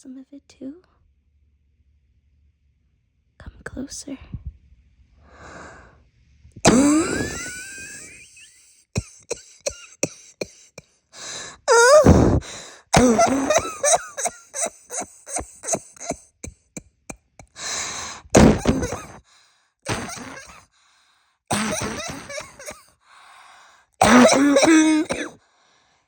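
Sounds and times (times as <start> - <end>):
woman coughing: 6.7 - 8.3, 9.0 - 19.2, 19.9 - 20.6, 21.5 - 22.9, 24.0 - 25.4.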